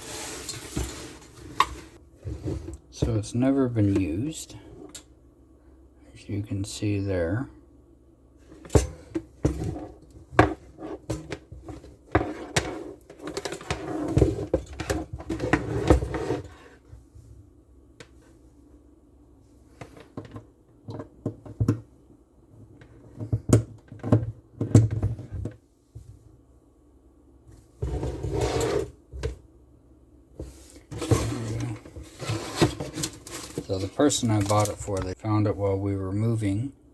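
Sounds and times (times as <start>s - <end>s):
handling knocks and clicks: 30.9s - 35.2s.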